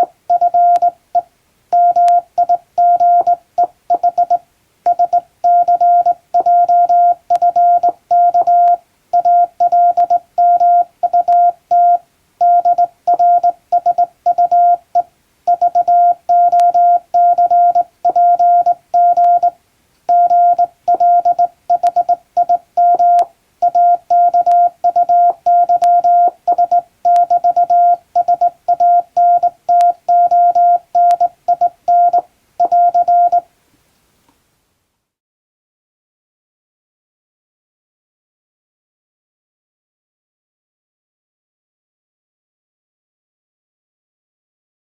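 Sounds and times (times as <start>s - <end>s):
morse code beeps: 0.0s - 1.0s, 1.8s - 33.4s.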